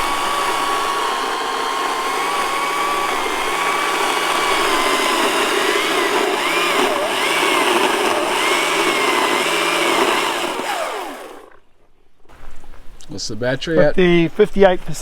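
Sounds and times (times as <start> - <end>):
electric chainsaw motor whine: 0.0 - 11.6.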